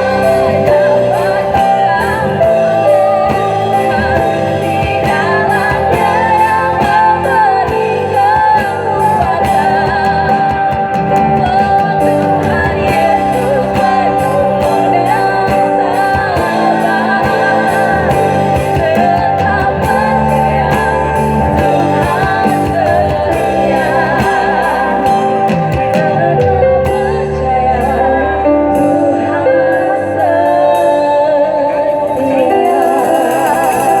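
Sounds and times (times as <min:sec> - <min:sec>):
drum kit beat: 0:00.0 - 0:29.0, 0:31.9 - 0:34.0
person singing: 0:00.0 - 0:34.0
worship band playing: 0:00.0 - 0:34.0.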